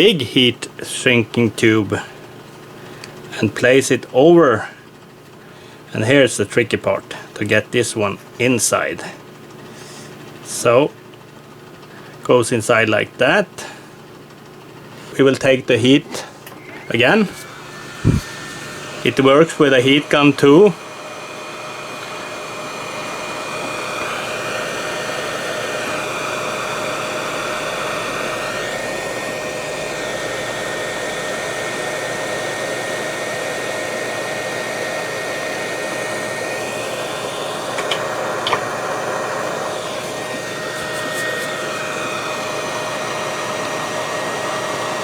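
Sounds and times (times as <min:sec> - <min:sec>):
hot air blower rushing: 0:15.8 - 0:45.0.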